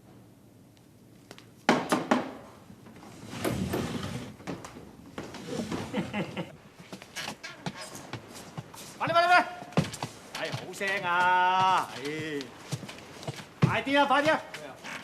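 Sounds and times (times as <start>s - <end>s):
sharp knocks: 1.7s - 2.5s.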